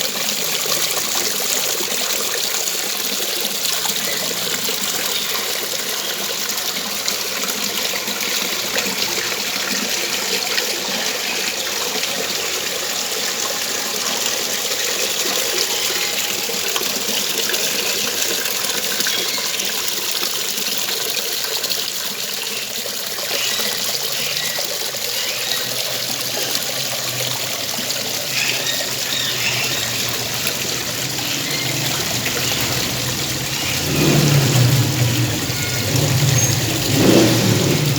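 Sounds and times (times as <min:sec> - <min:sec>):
waterfall splashing: 0:24.9 - 0:37.9
low engine-like hum: 0:26.3 - 0:37.9.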